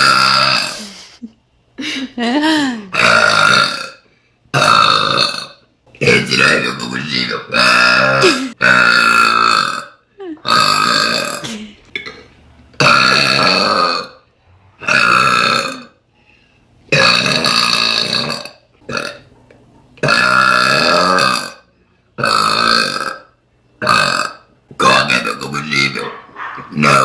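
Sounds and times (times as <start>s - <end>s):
woman burping loudly: 0.0s - 1.0s, 2.0s - 5.6s, 7.5s - 14.2s, 14.8s - 16.0s, 16.9s - 19.3s, 20.0s - 24.5s.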